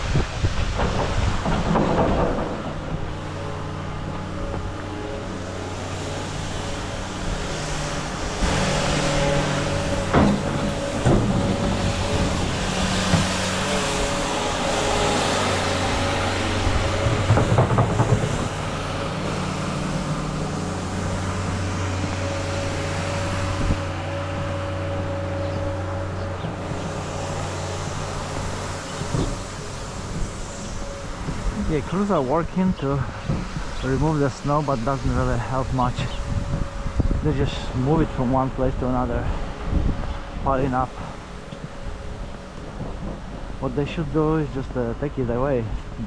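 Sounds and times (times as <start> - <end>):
heavy vehicle engine running: 0.0 - 46.0
sharp knocks: 16.9 - 19.5.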